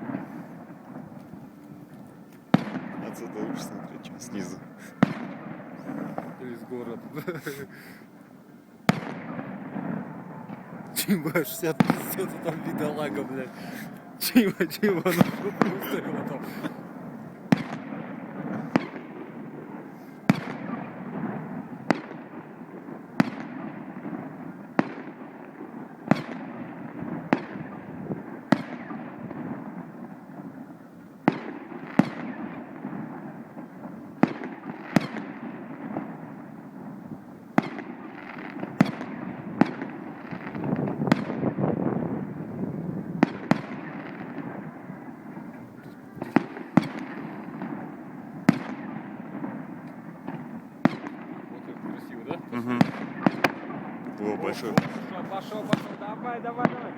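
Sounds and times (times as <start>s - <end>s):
fireworks bursting with echo: 0.0s - 56.9s
fireworks rumbling: 0.0s - 56.9s.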